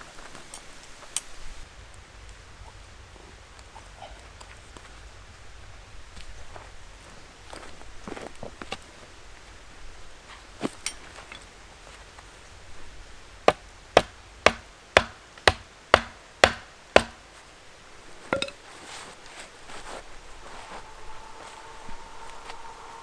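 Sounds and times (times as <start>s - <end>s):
firewood being split: 13.4s - 19.4s.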